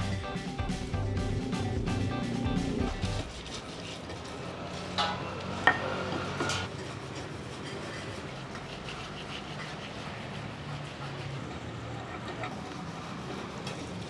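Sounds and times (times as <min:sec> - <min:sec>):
tableware clinking: 0:04.9 - 0:06.7.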